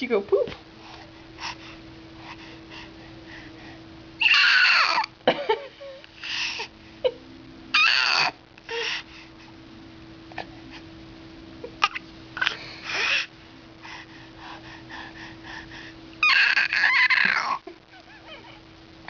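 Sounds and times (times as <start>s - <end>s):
faint steady hum: 0.0s - 19.0s
baby squealing: 4.2s - 5.1s, 7.8s - 8.3s, 16.2s - 17.6s.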